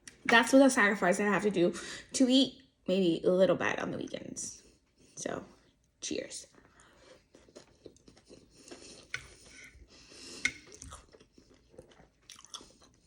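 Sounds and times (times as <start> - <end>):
person chewing and crunching food: 5.7 - 13.0.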